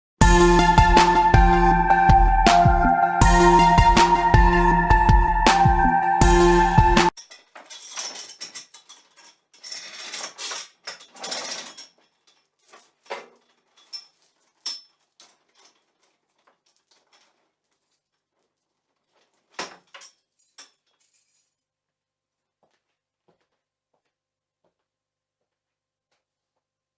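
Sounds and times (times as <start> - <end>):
metal chain rattling: 19.8 - 21.6.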